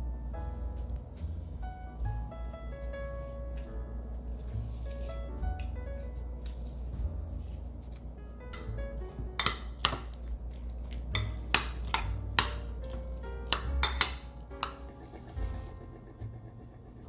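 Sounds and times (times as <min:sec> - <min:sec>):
soft background music: 0:00.0 - 0:17.0
utensils clinking against cookware: 0:09.4 - 0:16.0.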